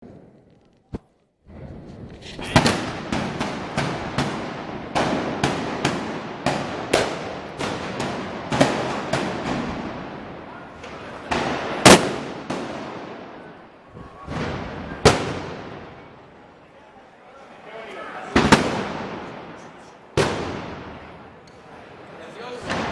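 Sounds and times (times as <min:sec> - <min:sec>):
loud explosive bangs: 0:01.5 - 0:16.2, 0:20.2 - 0:21.2.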